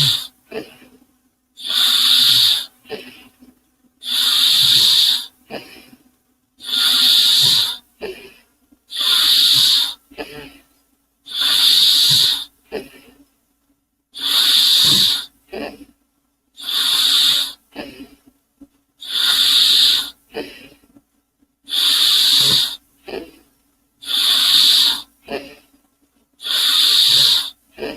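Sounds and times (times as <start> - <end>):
steam engine hissing: 0.0 - 0.4, 1.6 - 2.8, 4.0 - 5.3, 6.6 - 7.8, 8.9 - 10.0, 11.3 - 12.5, 14.2 - 15.3, 16.6 - 17.6, 19.0 - 20.2, 21.7 - 23.2, 24.0 - 25.1, 26.4 - 27.6
wheezy steam puff: 0.0 - 0.4, 1.6 - 2.8, 4.0 - 5.3, 6.6 - 7.8, 8.9 - 10.0, 11.3 - 12.5, 14.2 - 15.3, 16.6 - 17.6, 19.0 - 20.2, 21.7 - 23.2, 24.0 - 25.4, 26.4 - 27.9
faint low hum: 0.0 - 14.4.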